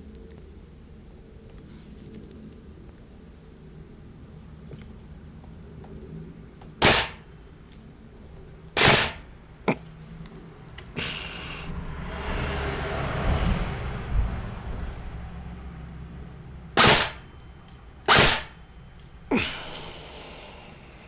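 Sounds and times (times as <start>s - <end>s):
airsoft rifle bursts: 6.8s - 7.2s, 8.8s - 9.2s, 16.8s - 17.2s, 18.1s - 18.5s
steady rushing noise: 10.9s - 18.8s.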